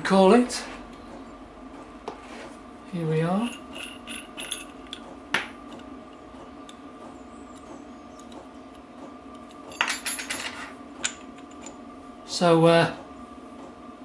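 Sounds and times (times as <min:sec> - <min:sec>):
faint steady hum: 0:00.0 - 0:14.0
metal parts clinking: 0:03.4 - 0:05.0, 0:09.7 - 0:11.8.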